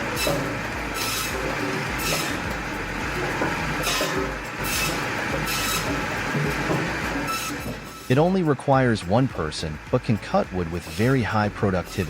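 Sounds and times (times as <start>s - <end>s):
cutter rasping through wood: 0.0s - 8.0s
log-cutting machine humming: 0.0s - 12.0s.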